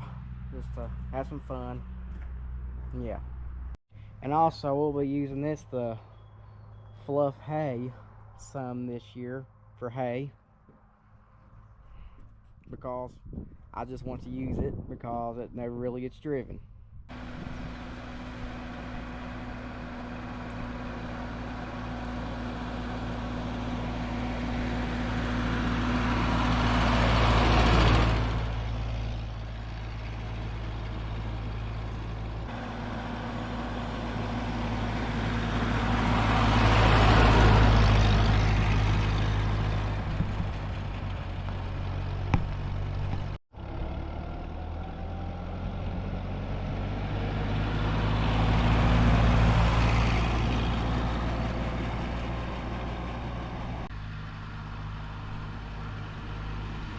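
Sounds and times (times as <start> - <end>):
tractor engine running: 0.0 - 7.0, 17.1 - 56.9.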